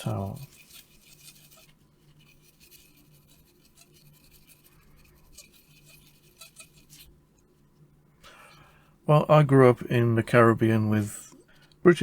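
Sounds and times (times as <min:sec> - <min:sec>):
scratchy rubbing of circuit board: 0:00.0 - 0:07.2
low steady hum: 0:00.0 - 0:12.0.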